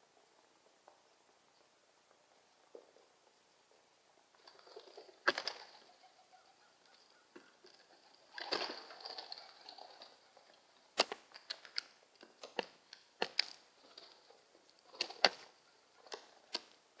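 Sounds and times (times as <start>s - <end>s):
birds tapping and clicking: 6.8s - 16.8s.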